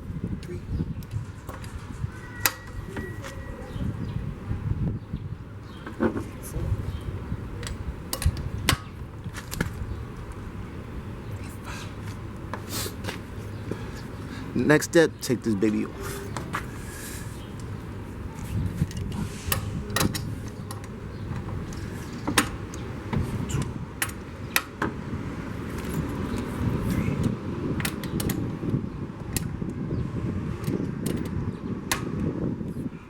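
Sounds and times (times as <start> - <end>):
metal clicks of socket on lug nuts: 18.9 - 21.8.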